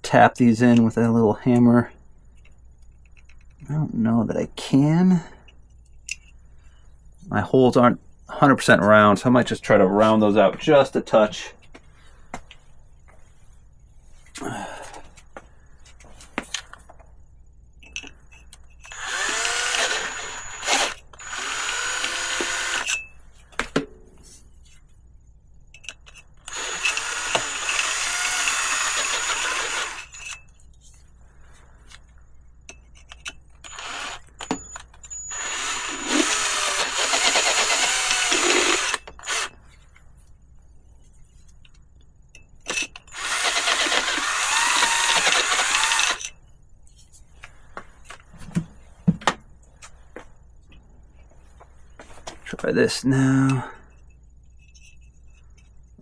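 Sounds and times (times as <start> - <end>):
power drill drilling metal: 18.9 - 23.0, 26.4 - 30.4, 33.6 - 39.5, 43.0 - 46.3.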